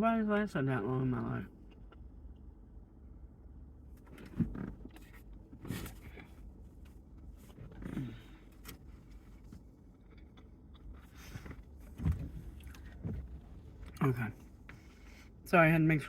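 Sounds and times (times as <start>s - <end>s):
steady low rumble: 0.0s - 16.0s
person chewing food: 9.9s - 11.2s.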